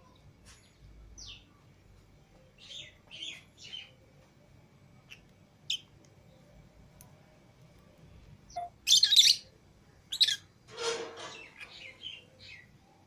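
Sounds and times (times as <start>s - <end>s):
lovebirds chirping: 2.4s - 4.0s, 5.0s - 6.7s, 8.4s - 10.5s, 11.3s - 12.9s.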